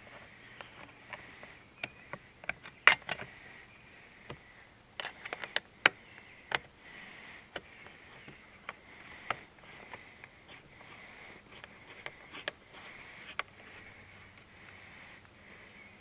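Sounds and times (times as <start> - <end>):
hands and tools clicking and knocking: 7.5 - 14.8.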